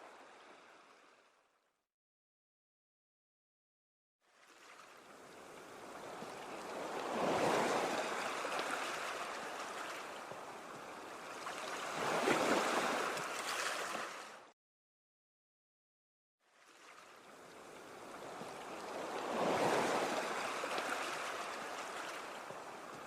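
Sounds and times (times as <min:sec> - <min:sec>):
sea waves breaking: 0:00.0 - 0:01.2, 0:04.2 - 0:14.5, 0:16.4 - 0:23.0.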